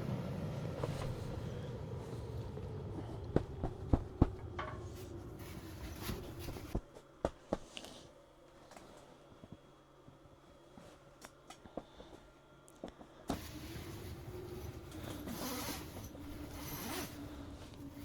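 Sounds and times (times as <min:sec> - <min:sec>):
low motor running: 0:13.3 - 0:18.0.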